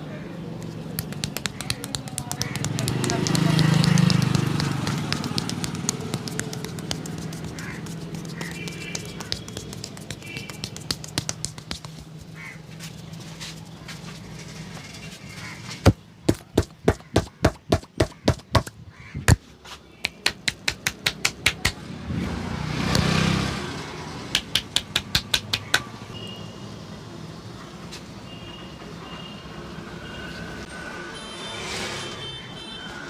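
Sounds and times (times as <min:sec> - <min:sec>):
hand slaps on body: 0:01.0 - 0:12.2, 0:20.0 - 0:21.8, 0:24.4 - 0:25.9
rustling: 0:01.0 - 0:16.5.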